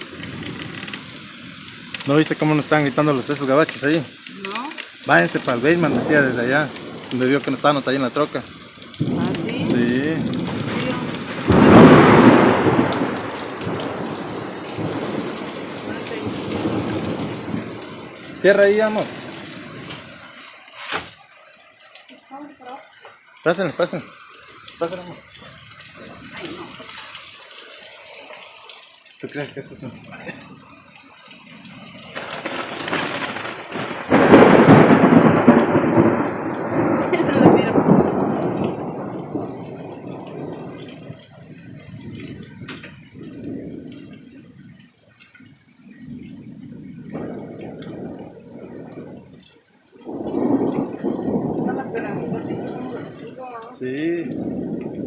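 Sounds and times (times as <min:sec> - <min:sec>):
thunder rumbling: 0:00.0 - 0:20.6, 0:29.4 - 0:55.0
steady rain: 0:00.0 - 0:55.0
loud thunder clap: 0:09.0 - 0:19.3, 0:32.1 - 0:41.3, 0:46.1 - 0:49.4, 0:50.1 - 0:53.4, 0:54.2 - 0:55.0.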